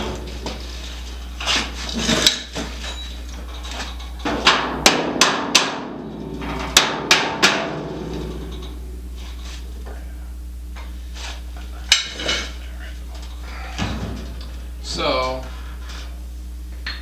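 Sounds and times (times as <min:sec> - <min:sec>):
metal clatter: 0:00.0 - 0:11.1
hammer ringing on sheet metal: 0:04.3 - 0:10.1.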